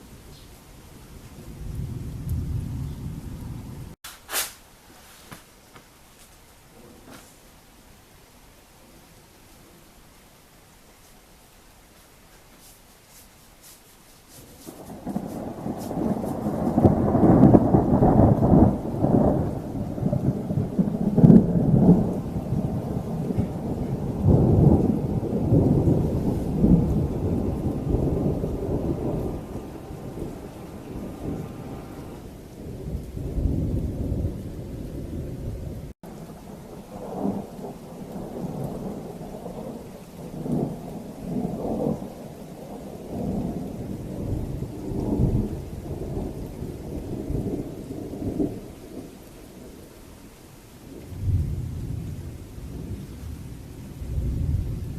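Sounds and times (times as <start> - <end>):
thunder rumbling: 0.0 - 4.0, 14.5 - 50.0, 50.8 - 54.9
rain falling: 0.0 - 54.9.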